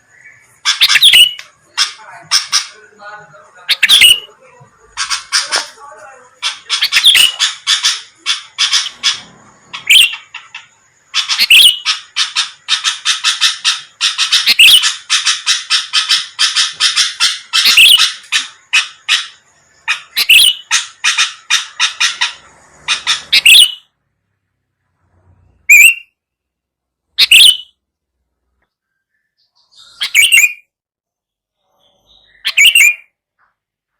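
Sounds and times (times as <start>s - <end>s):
bird rapid chattering calls: 0.0s - 23.9s, 25.6s - 26.1s, 27.2s - 27.7s, 29.4s - 30.6s, 31.8s - 33.1s
short bird calls: 4.9s - 23.9s, 25.2s - 26.4s, 27.2s - 27.8s, 31.6s - 33.2s.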